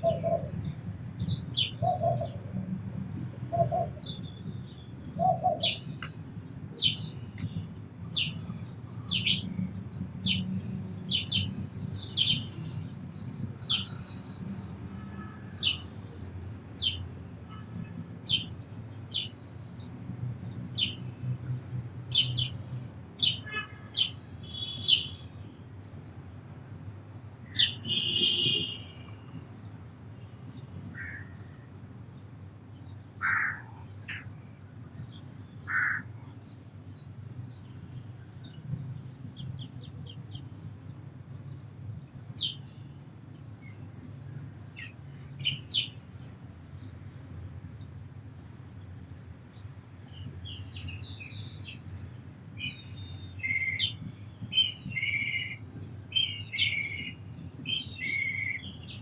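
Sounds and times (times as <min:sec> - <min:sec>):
sparrows chirping: 0:00.0 - 0:59.0
harsh bird call: 0:27.5 - 0:29.2.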